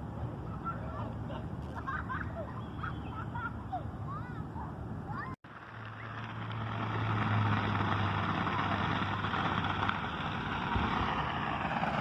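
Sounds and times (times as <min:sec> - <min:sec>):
low motor hum: 0:05.5 - 0:12.0.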